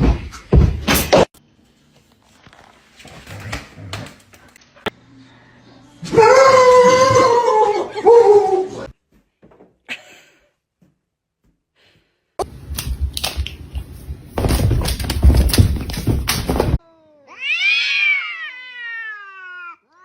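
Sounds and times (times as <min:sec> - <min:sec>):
rustling and knocking: 0:12.4 - 0:16.8
cat meowing: 0:16.9 - 0:20.0.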